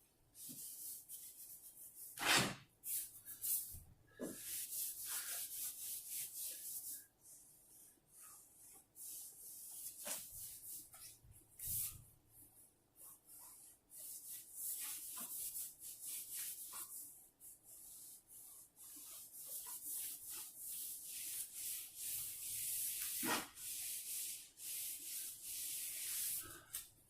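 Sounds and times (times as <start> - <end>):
hand rubbing on wooden floor: 17.7 - 26.9.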